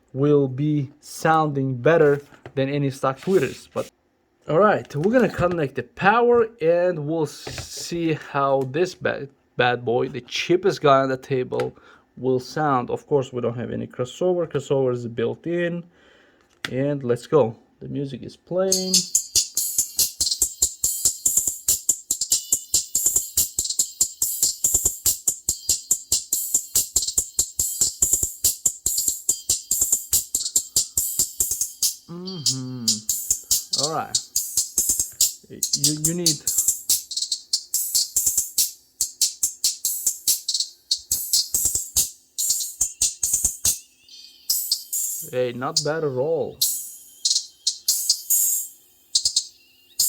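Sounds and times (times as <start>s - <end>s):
tinny music through tweeter: 18.7s - 50.0s.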